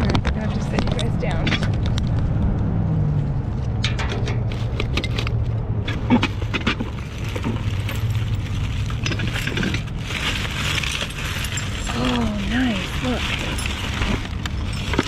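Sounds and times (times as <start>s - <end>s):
low engine hum: 0.0s - 15.0s
debris clicking and scraping: 3.8s - 15.0s.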